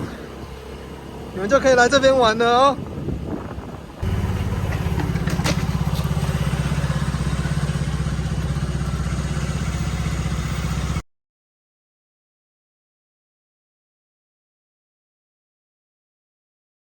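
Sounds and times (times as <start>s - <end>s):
engine running steadily: 0.0s - 11.0s.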